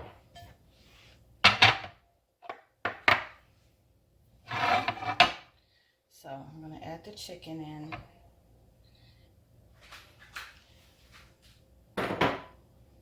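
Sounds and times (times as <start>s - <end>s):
kitchen items knocking and scraping: 0.0s - 0.6s, 1.4s - 3.4s, 4.5s - 5.5s, 12.0s - 12.6s.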